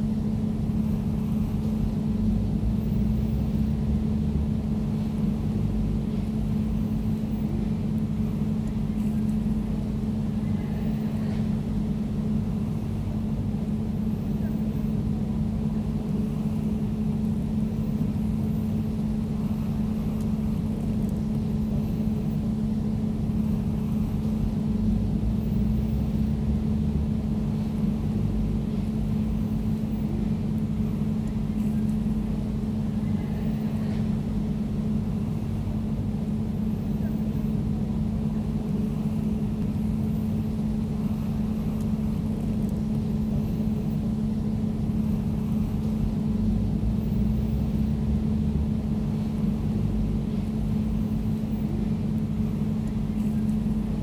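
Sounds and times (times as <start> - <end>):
air conditioner humming: 0.0 - 54.0.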